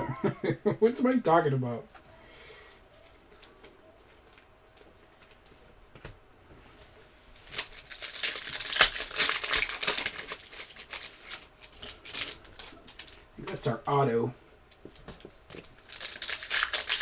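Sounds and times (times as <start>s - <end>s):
foil wrapper tearing and crinkling: 7.4s - 13.7s, 15.0s - 17.0s.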